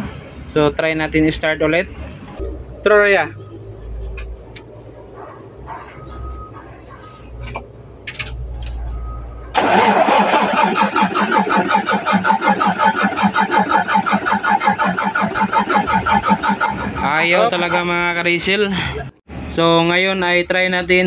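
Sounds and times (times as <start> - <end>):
diesel engine cranking: 2.1 - 18.4.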